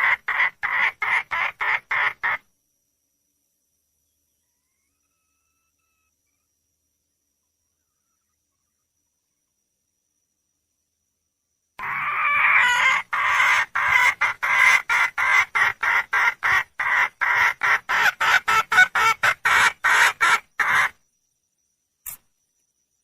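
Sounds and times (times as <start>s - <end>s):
hen clucking: 0.0s - 2.4s, 11.8s - 21.0s
hen calling: 11.8s - 20.9s.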